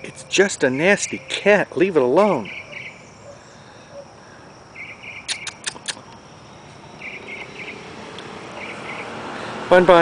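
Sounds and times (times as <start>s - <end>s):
crickets chirping in trills: 0.0s - 10.0s
quick sharp clicks: 5.2s - 6.2s.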